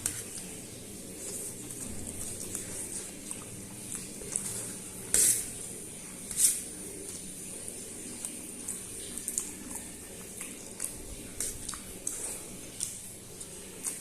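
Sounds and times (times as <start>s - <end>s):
wet slurps: 0.0s - 14.0s
chewing and mouth clicks: 1.2s - 4.9s, 6.9s - 14.0s.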